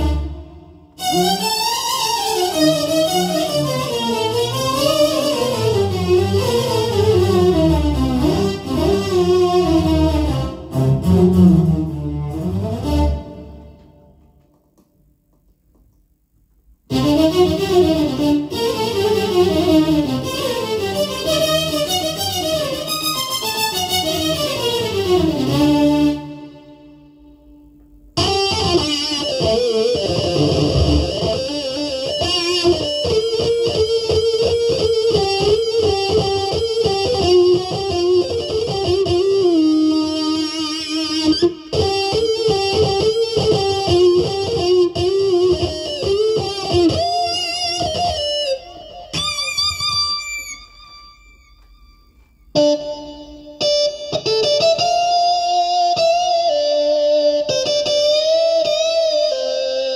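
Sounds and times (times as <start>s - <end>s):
keyboard guitar-like melody: 16.9s - 59.9s.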